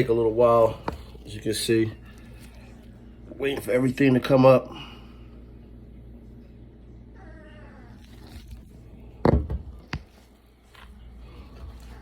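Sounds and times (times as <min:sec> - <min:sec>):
puppy whining: 0:07.0 - 0:08.5.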